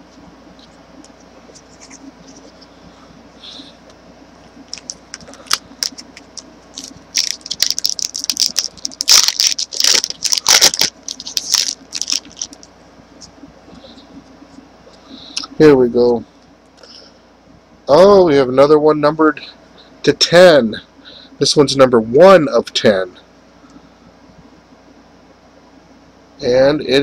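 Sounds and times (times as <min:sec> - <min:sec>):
cards scraping and crackling: 0:00.1 - 0:02.7, 0:04.7 - 0:14.0.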